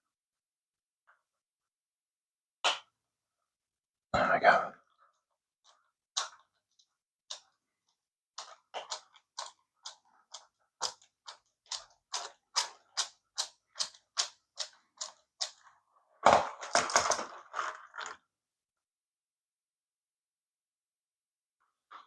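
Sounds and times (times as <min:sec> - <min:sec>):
plastic parts clattering: 0:16.4 - 0:18.2.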